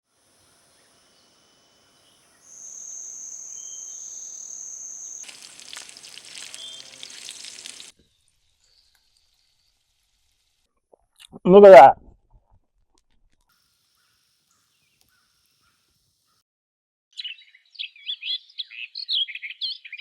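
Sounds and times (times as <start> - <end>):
high-pitched insect trill: 0.1 - 7.9
bacon sizzling in a pan: 4.6 - 10.6.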